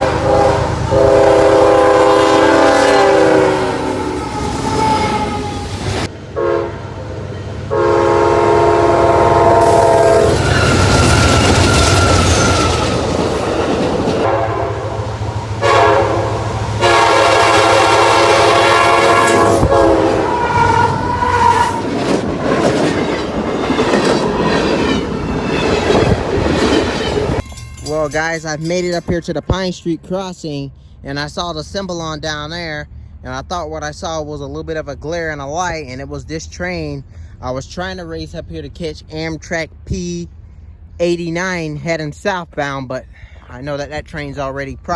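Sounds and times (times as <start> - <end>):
locomotive air horn blasts: 0.0 - 5.6, 6.4 - 6.9, 7.7 - 12.8, 14.2 - 21.8
wheels clicking over rail joints: 21.0 - 29.8
diesel engine rumble: 28.0 - 44.9.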